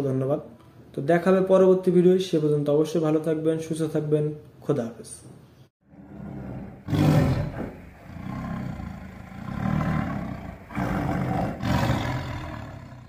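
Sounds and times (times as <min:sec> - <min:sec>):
deep rough roaring: 0:05.8 - 0:13.0.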